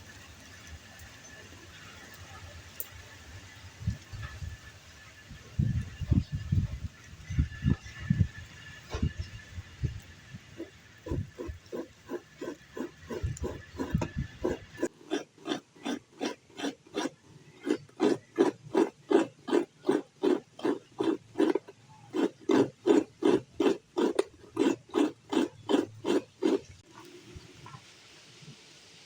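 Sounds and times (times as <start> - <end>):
food being worked in a bowl: 7.0 - 27.1.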